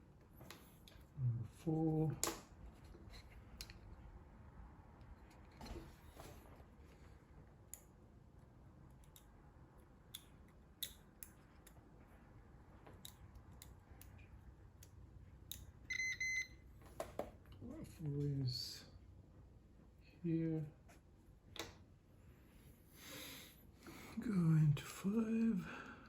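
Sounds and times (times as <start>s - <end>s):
short high beep: 15.9s - 16.5s.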